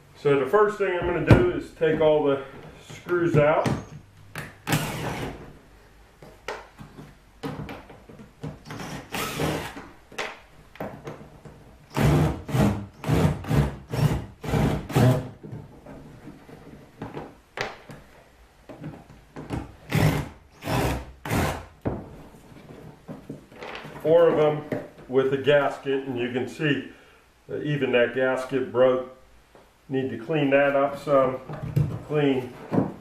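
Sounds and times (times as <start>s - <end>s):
handling and scraping noises: 15.4s - 19.5s, 22.0s - 26.3s, 30.5s - 33.0s.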